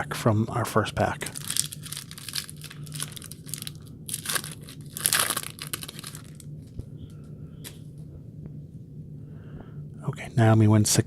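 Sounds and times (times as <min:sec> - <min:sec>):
foil wrapper crinkling and tearing: 0:01.2 - 0:06.7.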